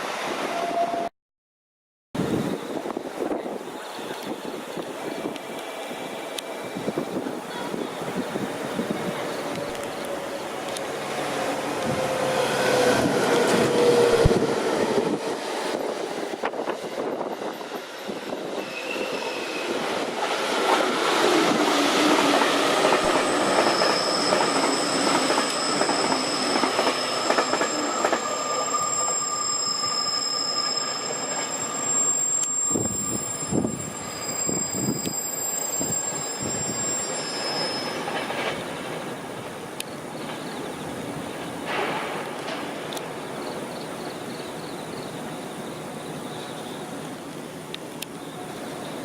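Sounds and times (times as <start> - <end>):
train rolling noise: 2.2 - 49.0
brake and wheel squeals: 23.0 - 38.7.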